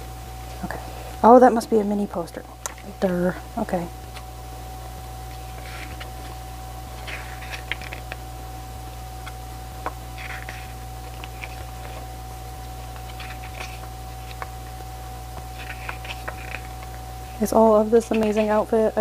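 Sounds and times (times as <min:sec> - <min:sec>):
electrical hum: 0:00.0 - 0:19.0
paper rustling and crinkling: 0:05.3 - 0:08.2, 0:09.2 - 0:12.1, 0:12.8 - 0:14.5, 0:15.4 - 0:17.0, 0:18.0 - 0:18.7.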